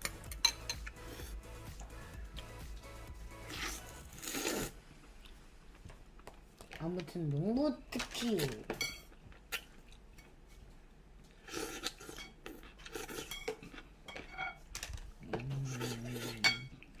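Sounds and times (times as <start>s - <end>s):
utensils clinking against dishes: 0.0s - 1.0s, 8.0s - 9.1s, 12.1s - 14.7s, 15.7s - 16.8s.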